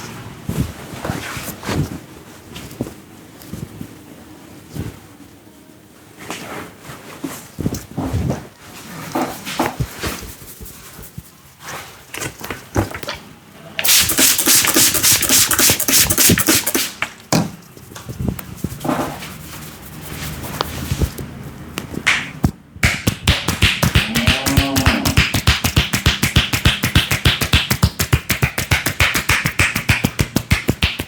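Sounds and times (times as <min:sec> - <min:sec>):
hands rubbing head: 0:13.9 - 0:16.9, 0:17.8 - 0:21.2
hands tapping and slapping head: 0:21.8 - 0:31.0.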